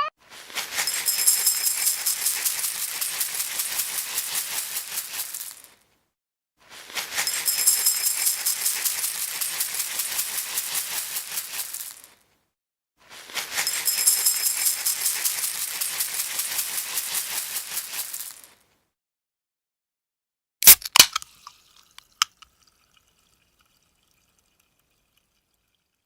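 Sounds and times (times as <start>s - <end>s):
small hard objects rattling: 0.6s - 5.8s, 7.0s - 12.2s, 13.4s - 18.6s.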